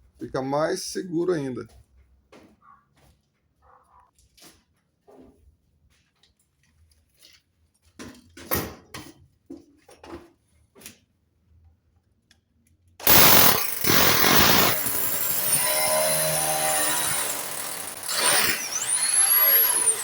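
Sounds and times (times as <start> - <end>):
power drill drilling: 13.0 - 20.0.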